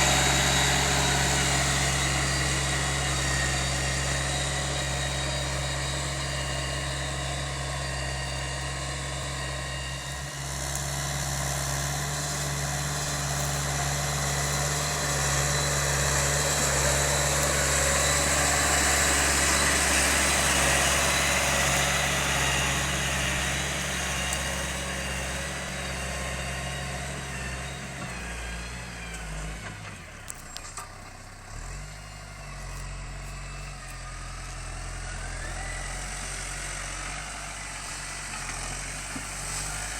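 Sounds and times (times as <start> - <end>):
tractor diesel engine under load: 0.0 - 39.9.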